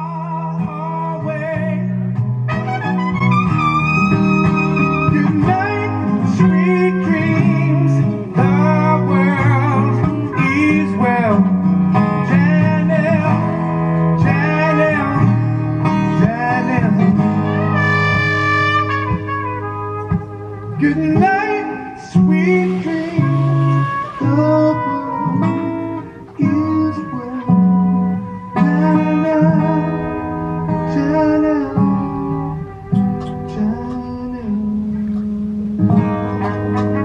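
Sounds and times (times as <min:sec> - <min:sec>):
bass line: 0:00.0 - 0:37.0
guitar: 0:00.0 - 0:37.0
person singing: 0:04.8 - 0:17.9, 0:20.7 - 0:35.4.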